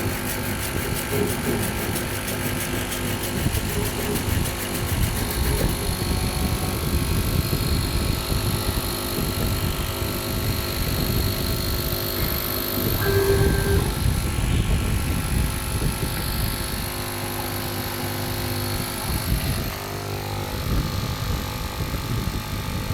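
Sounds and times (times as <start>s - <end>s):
machine rumbling with high whine: 0.0s - 15.1s
short tone: 13.0s - 14.2s.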